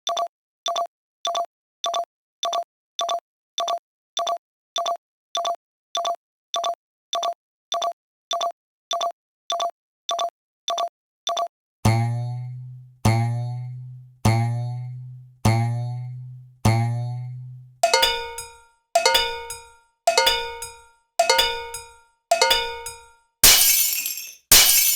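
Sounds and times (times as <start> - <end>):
loud low struck tone: 11.9 - 18.4.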